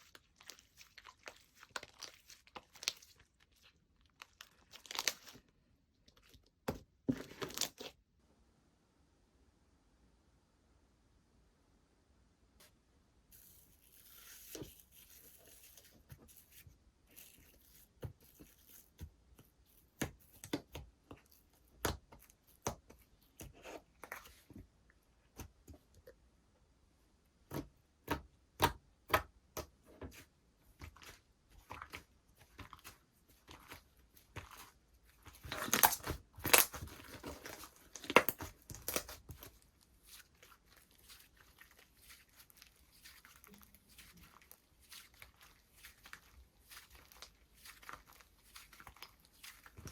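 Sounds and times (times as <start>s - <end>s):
slime crackling: 30.8s - 49.9s.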